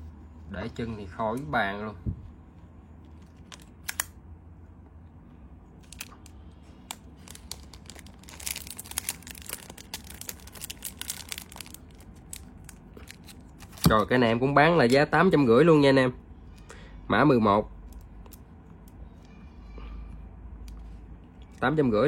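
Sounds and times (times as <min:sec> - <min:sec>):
box crinkling: 0:06.9 - 0:14.0.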